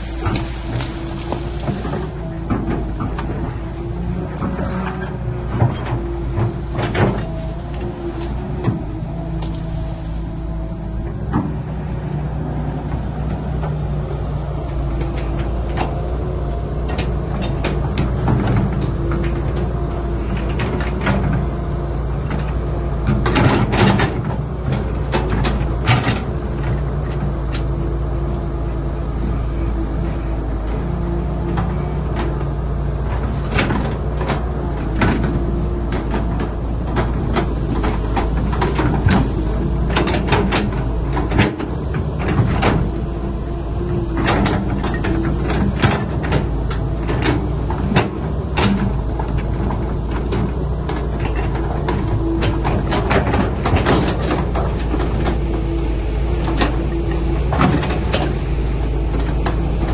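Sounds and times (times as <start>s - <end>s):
excavator diesel engine running: 0.0s - 59.9s
metallic clanks and knocks: 31.5s - 43.3s, 43.9s - 59.9s.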